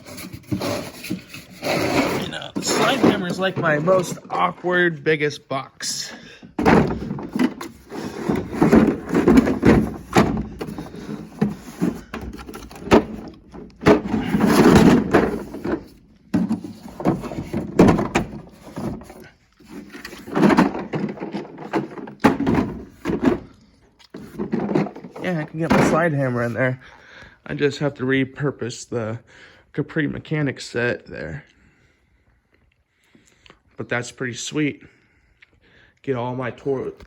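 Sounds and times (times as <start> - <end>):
tool cases knocking and clattering: 0.0 - 4.7, 6.4 - 26.5
tool chest drawers sliding: 0.0 - 4.8, 6.5 - 26.5.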